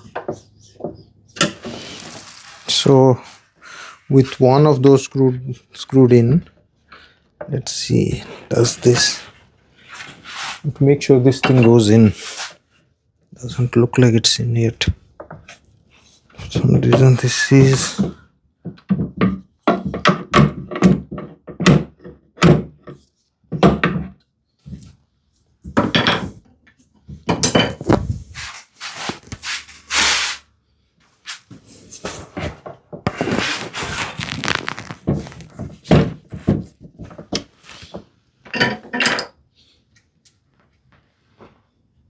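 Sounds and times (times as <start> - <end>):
wood scraping and rubbing: 1.4 - 3.0, 27.8 - 30.4, 33.1 - 35.7.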